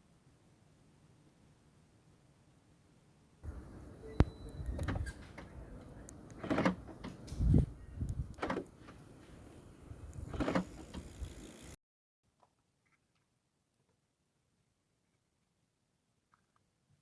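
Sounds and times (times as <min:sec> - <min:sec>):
car window motor whirring: 0:06.4 - 0:07.6, 0:10.0 - 0:11.8.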